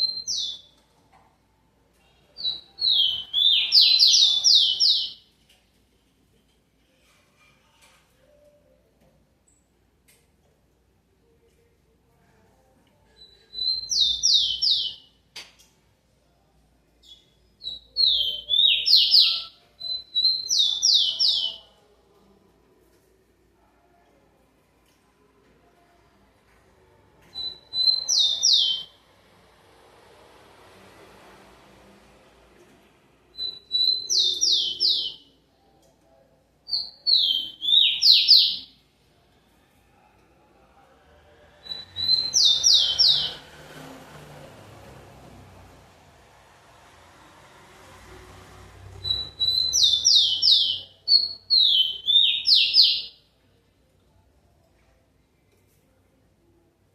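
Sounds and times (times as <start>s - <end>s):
sparrow singing: 2.4s - 5.2s, 13.2s - 15.1s, 17.0s - 21.7s, 27.3s - 28.9s, 33.4s - 35.2s, 36.7s - 38.7s, 41.6s - 43.4s, 49.0s - 53.2s.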